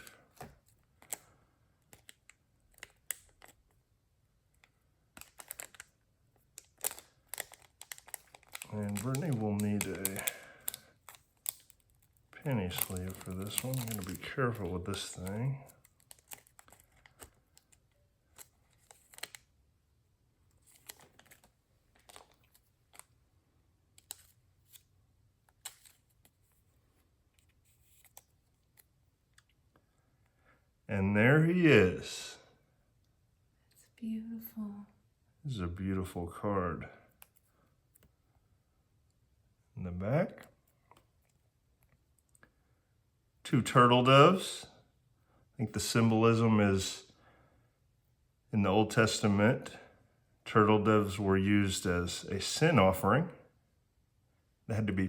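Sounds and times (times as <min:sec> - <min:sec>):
plastic sleeve crinkling and clicks: 0:00.0 - 0:03.8, 0:04.5 - 0:19.6, 0:20.4 - 0:29.9.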